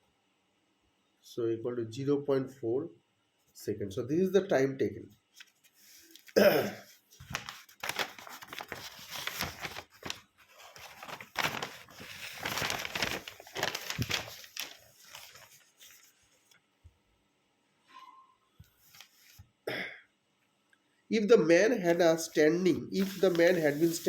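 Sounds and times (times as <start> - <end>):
paper rustling and scratching: 5.4 - 16.6, 18.8 - 19.4, 21.9 - 24.0.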